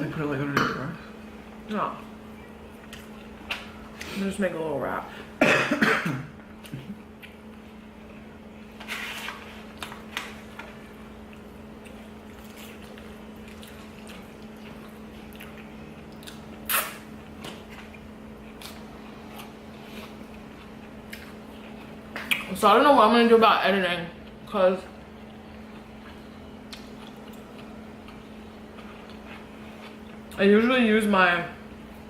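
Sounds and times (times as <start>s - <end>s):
steady low hum: 0.0s - 32.0s
person chewing: 6.6s - 7.7s, 11.2s - 22.5s, 25.2s - 30.4s.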